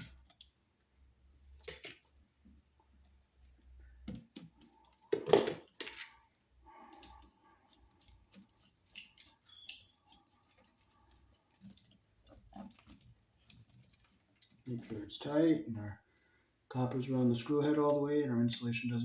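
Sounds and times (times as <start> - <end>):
screwdriver clicks and scrapes: 7.0 - 10.9.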